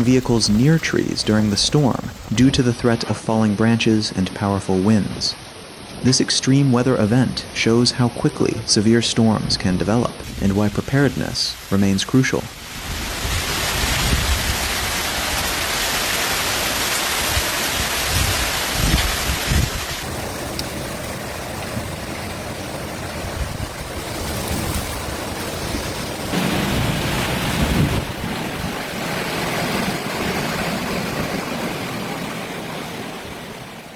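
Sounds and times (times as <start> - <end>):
wind gusts buffeting microphone: 0.0 - 2.8, 12.6 - 15.8, 17.1 - 33.9
heavy rain: 0.0 - 9.2, 10.1 - 33.9.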